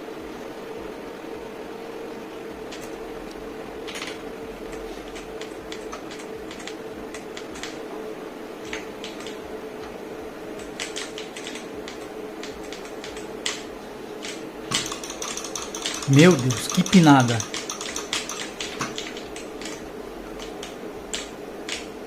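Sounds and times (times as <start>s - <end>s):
steady low hum: 0.0s - 22.0s
mechanical keyboard keys clacking: 14.2s - 19.8s.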